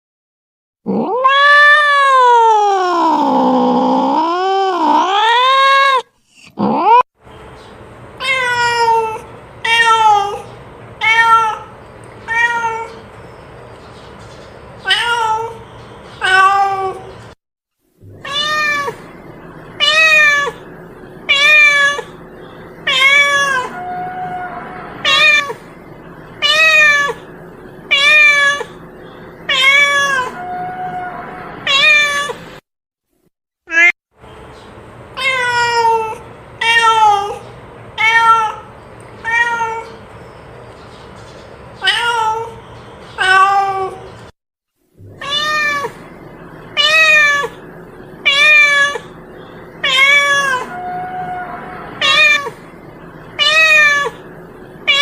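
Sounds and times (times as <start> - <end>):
cat meowing: 0.9 - 6.0, 8.2 - 13.0, 14.8 - 15.6, 16.2 - 17.1, 18.0 - 19.0, 19.8 - 20.7, 21.3 - 22.2, 22.8 - 25.6, 26.4 - 27.2, 27.9 - 28.8, 29.5 - 32.4, 33.7 - 33.9, 35.2 - 37.4, 38.0 - 40.0, 41.8 - 42.6, 43.2 - 44.1, 45.0 - 46.0, 46.7 - 47.6, 48.2 - 49.2, 49.8 - 52.6, 53.4 - 55.0.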